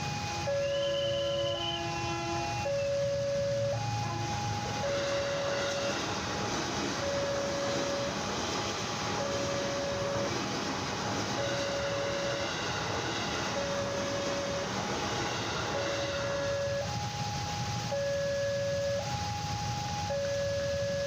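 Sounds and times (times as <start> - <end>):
two-tone electronic signal: 0.0 - 6.0, 9.2 - 10.3, 11.4 - 17.0, 20.1 - 21.0
electric train rumbling past: 0.0 - 21.0
rail noise: 0.0 - 21.0.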